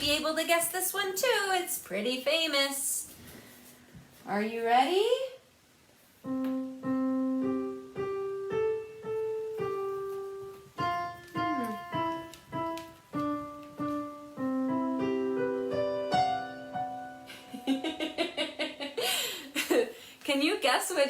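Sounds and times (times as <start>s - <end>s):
electronic piano melody: 6.3s - 17.3s.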